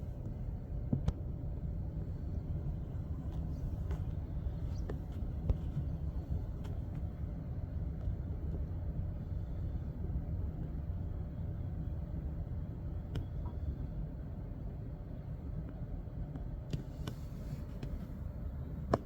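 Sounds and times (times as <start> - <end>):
low outdoor rumble: 0.0 - 19.0.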